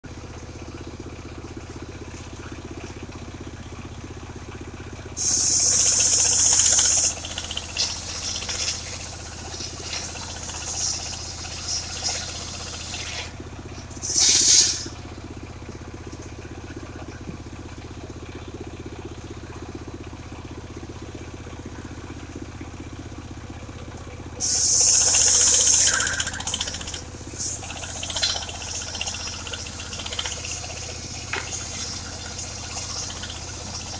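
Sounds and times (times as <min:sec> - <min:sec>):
sawmill engine running: 0:00.0 - 0:33.9
high hissing noise: 0:05.2 - 0:07.2, 0:14.0 - 0:15.0, 0:24.4 - 0:26.6.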